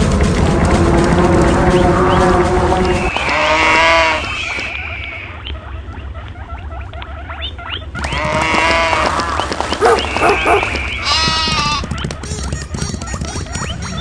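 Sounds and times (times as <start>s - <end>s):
steady low rumble: 0.0s - 8.0s
many animals calling: 1.7s - 14.0s.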